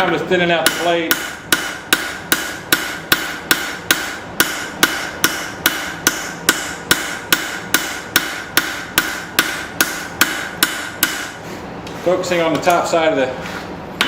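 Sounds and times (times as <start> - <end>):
hammer striking blade on anvil: 0.6 - 11.4.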